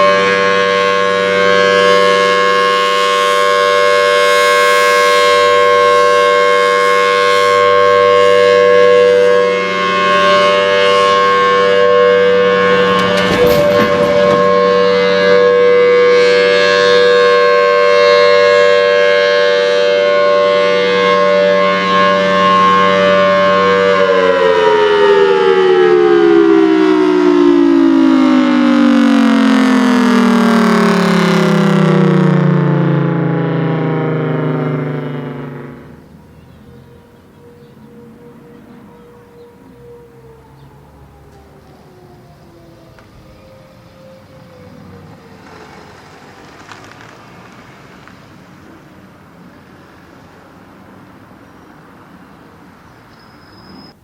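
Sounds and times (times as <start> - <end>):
warning siren steady tone: 0.0 - 46.8.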